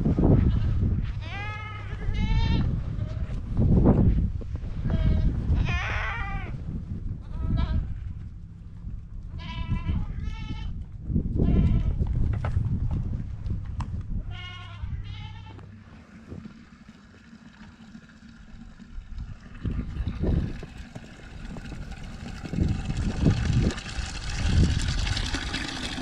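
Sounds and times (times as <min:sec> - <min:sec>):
low rumble: 0:00.0 - 0:17.0, 0:18.3 - 0:26.0
goats bleating: 0:01.2 - 0:02.7, 0:04.9 - 0:06.5, 0:09.3 - 0:10.7, 0:14.3 - 0:15.7.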